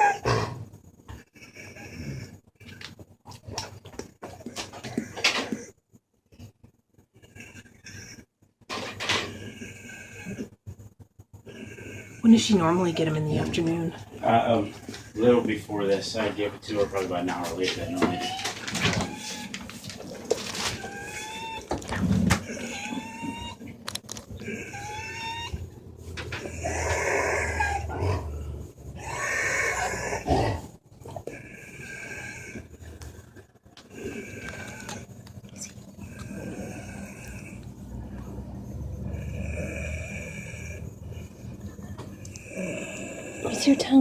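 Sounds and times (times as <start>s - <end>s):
dog wheezing breath: 16.7s - 23.7s, 24.3s - 35.2s.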